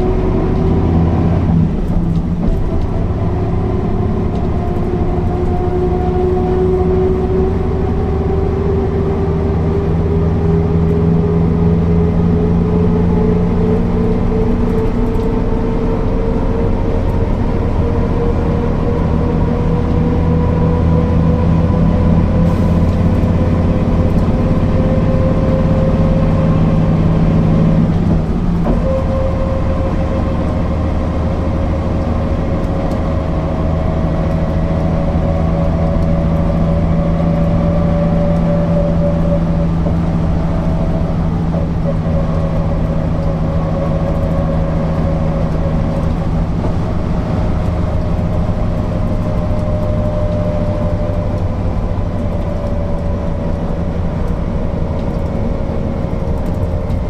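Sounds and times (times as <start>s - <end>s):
bus diesel engine humming: 0.0s - 57.0s
engine whine: 0.0s - 57.0s.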